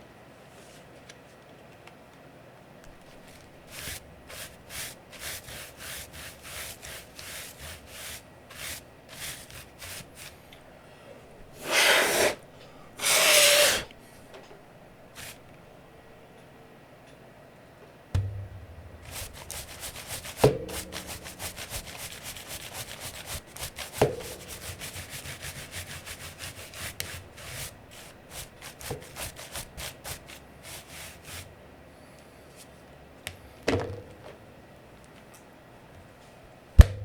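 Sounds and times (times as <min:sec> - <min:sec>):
brush scrubbing a keyboard: 0:03.2 - 0:10.4, 0:11.6 - 0:12.4, 0:13.0 - 0:13.8, 0:15.2 - 0:15.4, 0:19.1 - 0:31.5
sharp ringing knocks: 0:18.2 - 0:19.7.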